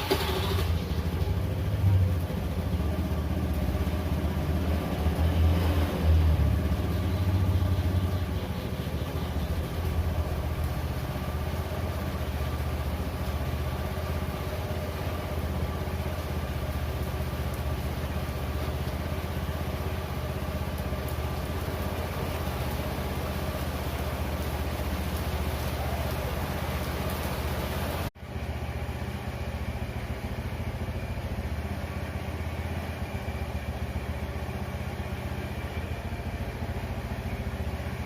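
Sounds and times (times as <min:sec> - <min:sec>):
scooter engine revving and idling: 0:00.0 - 0:12.8.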